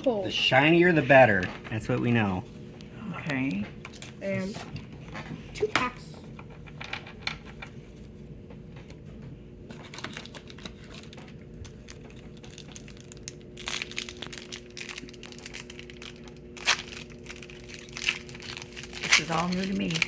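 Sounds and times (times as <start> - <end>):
foil wrapper crinkling and tearing: 9.7 - 20.0.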